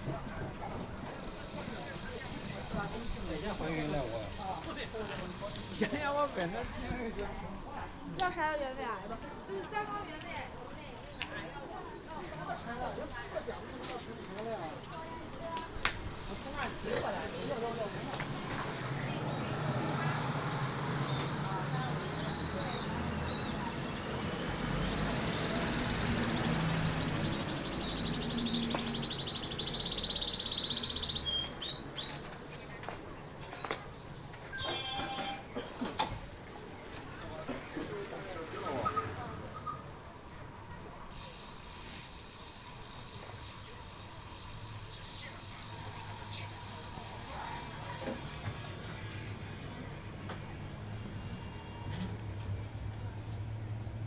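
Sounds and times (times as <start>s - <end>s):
street noise: 0.0s - 54.0s
motor vehicle humming: 16.1s - 31.6s
bird chirps: 24.8s - 32.4s.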